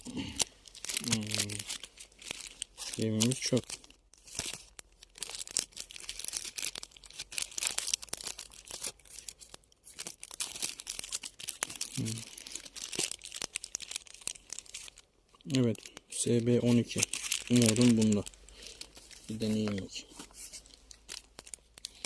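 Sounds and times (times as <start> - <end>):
plastic packaging crinkling: 0.0 - 22.0.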